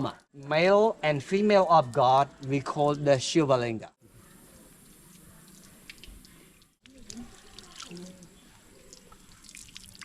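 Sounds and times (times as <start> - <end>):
faint distant voices: 0.0 - 9.8
faint ticks or drips: 4.5 - 10.0.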